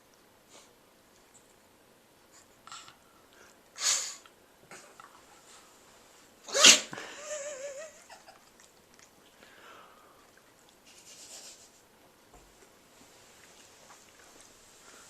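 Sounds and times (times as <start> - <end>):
dog sneezing: 3.8 - 4.2, 6.5 - 7.0.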